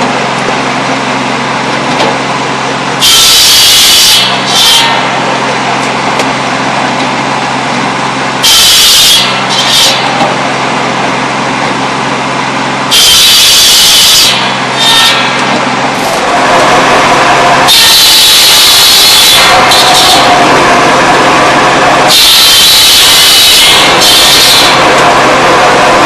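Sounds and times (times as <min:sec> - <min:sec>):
saw blade cutting wood: 0:04.1 - 0:05.2, 0:08.6 - 0:10.4, 0:14.2 - 0:16.2, 0:17.7 - 0:20.4, 0:22.1 - 0:25.1
circular saw humming: 0:12.5 - 0:26.0.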